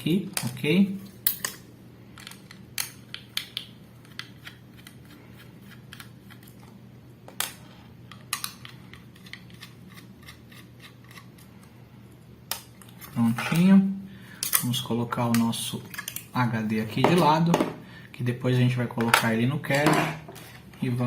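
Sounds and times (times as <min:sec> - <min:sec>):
faint steady hum: 0:00.0 - 0:21.0.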